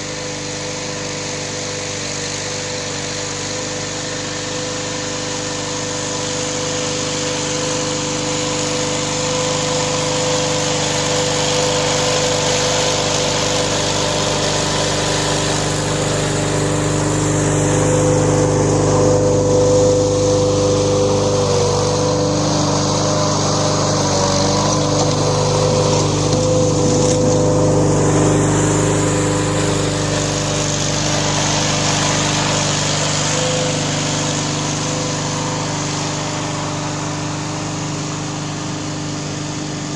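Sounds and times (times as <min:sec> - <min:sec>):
diesel engine running: 0:00.0 - 0:39.9.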